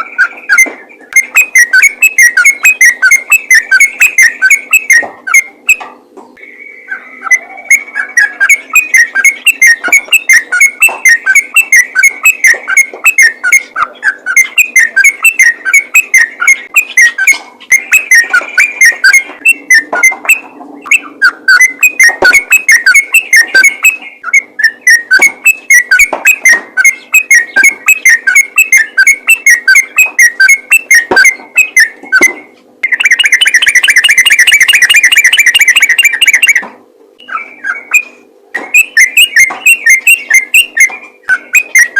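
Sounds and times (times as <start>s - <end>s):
bird singing bubbly whistles: 0.0s - 5.8s, 6.4s - 36.6s, 37.2s - 41.9s.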